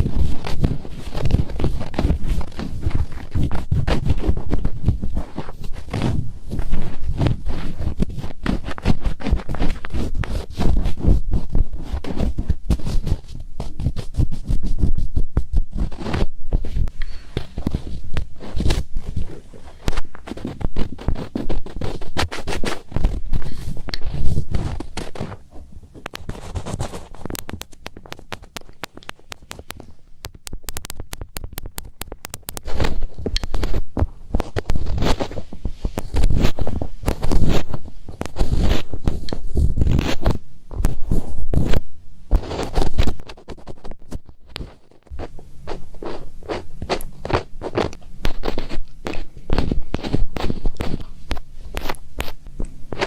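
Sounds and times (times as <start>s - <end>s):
fingers scratching on microphone: 0.0s - 53.0s
sharp crisp clicks: 26.0s - 35.4s.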